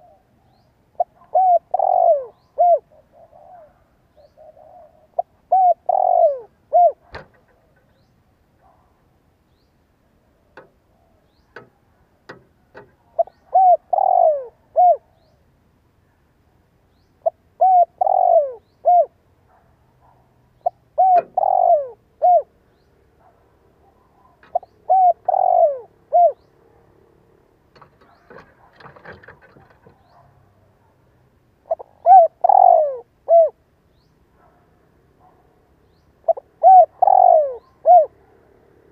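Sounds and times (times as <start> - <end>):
dove cooing: 0.0 - 8.0, 10.6 - 15.4, 17.2 - 19.2, 20.0 - 22.6, 23.8 - 26.8, 27.8 - 30.3, 31.6 - 33.6, 36.2 - 38.9.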